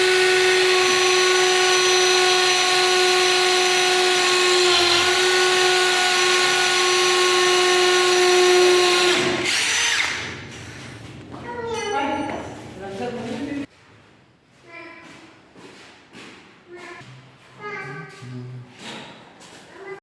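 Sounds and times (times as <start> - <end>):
impact drill motor whining: 0.0 - 10.4.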